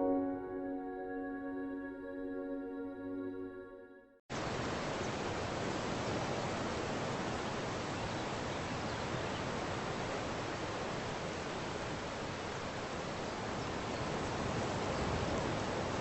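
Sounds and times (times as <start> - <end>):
steady rushing noise outdoors: 4.3 - 16.0.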